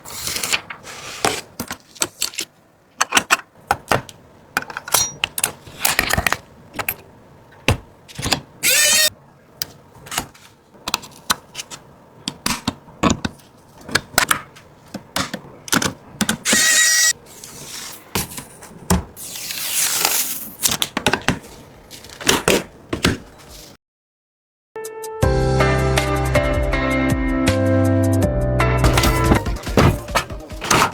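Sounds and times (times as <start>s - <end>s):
scraping and rustling: 0.0s - 2.5s
clicks and taps of computer parts: 12.2s - 16.5s.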